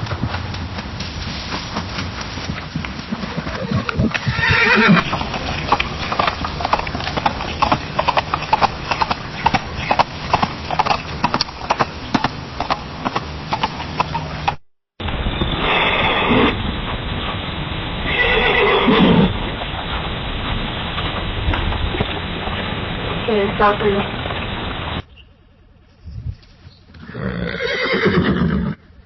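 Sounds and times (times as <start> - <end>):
clip-clopping hoofbeats: 0.0 - 14.6, 19.2 - 22.6
horse whinnying: 3.2 - 10.0, 15.6 - 16.6, 18.1 - 19.4, 27.0 - 28.8.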